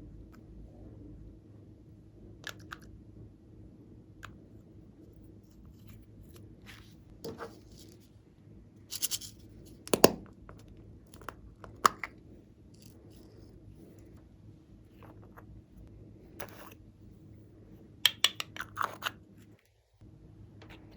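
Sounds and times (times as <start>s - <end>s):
hands crinkling and scraping materials: 8.9s - 10.2s.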